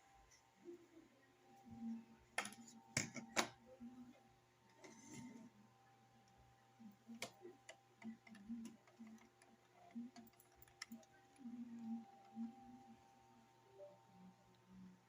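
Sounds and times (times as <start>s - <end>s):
faint steady hum: 0.0s - 15.0s
faint clicks and ticks: 6.2s - 13.1s.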